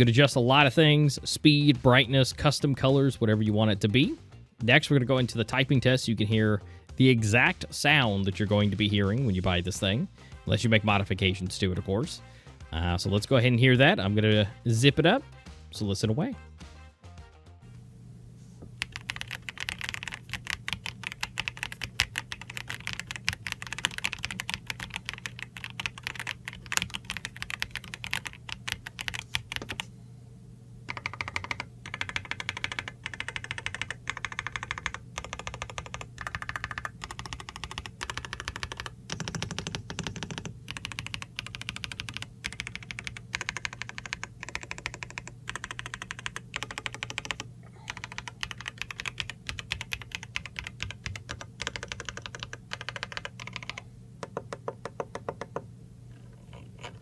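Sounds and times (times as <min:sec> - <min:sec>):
faint low hum: 0:17.6 - 0:57.0
mechanical keyboard typing: 0:18.7 - 0:29.9, 0:30.9 - 0:55.6.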